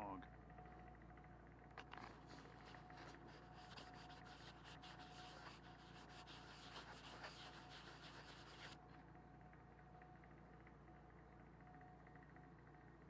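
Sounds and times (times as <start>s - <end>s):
rubbing strokes on camera lens: 2.3s - 8.8s.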